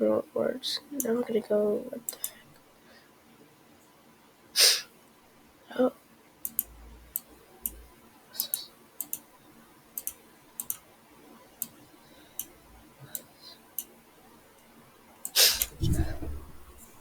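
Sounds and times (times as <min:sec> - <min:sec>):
computer mouse clicking: 0:06.4 - 0:07.8, 0:08.4 - 0:09.3, 0:10.0 - 0:10.8, 0:11.6 - 0:11.8, 0:12.4 - 0:13.9, 0:15.2 - 0:16.9.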